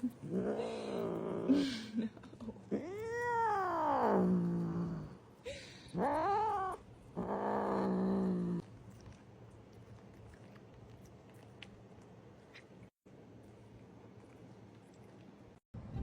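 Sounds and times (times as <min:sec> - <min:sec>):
cat yowling: 0:06.0 - 0:07.9.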